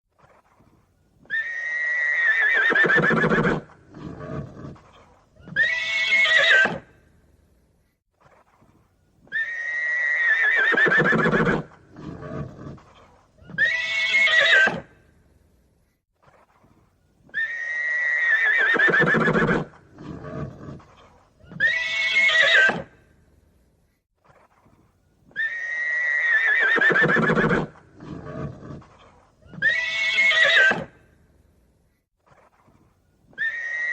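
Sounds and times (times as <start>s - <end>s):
horse neighing: 1.3s - 6.9s, 9.3s - 14.9s, 17.4s - 20.9s, 25.4s - 28.9s.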